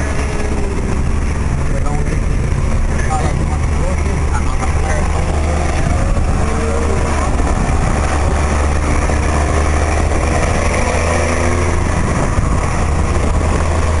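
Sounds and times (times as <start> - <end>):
truck diesel engine running: 0.0 - 14.0.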